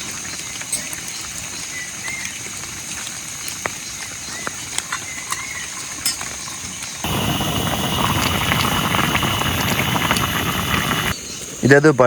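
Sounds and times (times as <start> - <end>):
vegetables sizzling in a pan: 6.8 - 11.2.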